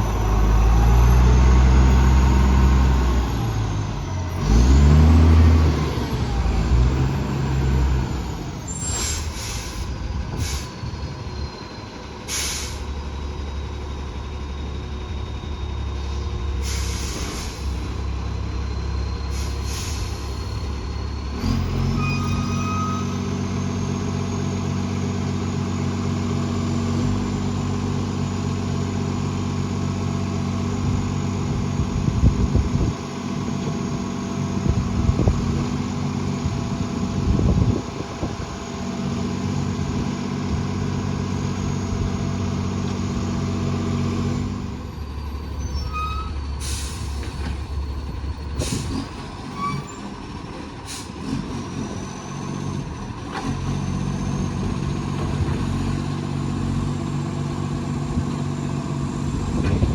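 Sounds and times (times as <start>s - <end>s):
diesel engine with exhaust leak: 0.0s - 59.9s
short sharp hisses: 8.8s - 10.8s, 12.3s - 12.9s, 16.6s - 17.8s, 19.3s - 20.3s
engine knocks: 59.2s - 59.9s.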